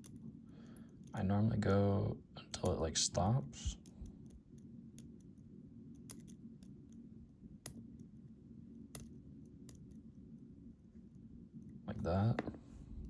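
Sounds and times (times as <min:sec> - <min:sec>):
faint low hum: 0:00.0 - 0:13.0
small metal clicks: 0:06.0 - 0:07.0, 0:08.9 - 0:10.0.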